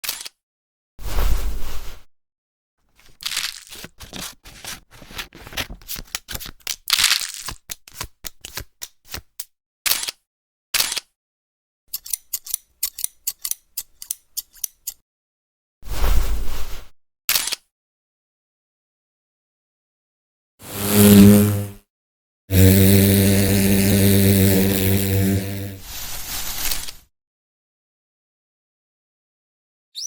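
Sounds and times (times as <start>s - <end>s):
crackly rustling bursts: 24.7s - 27.0s.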